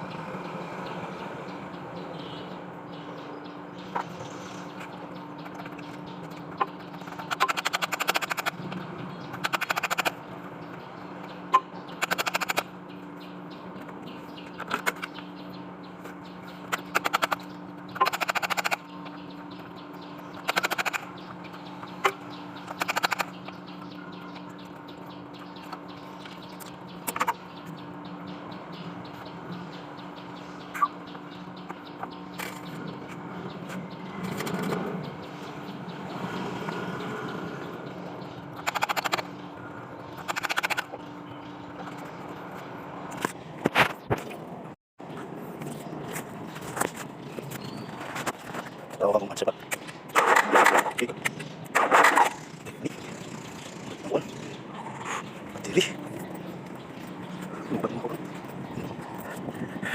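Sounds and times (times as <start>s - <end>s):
steady low hum: 0.0s - 59.9s
rapid mechanical rattling: 2.0s - 36.2s, 37.5s - 44.2s.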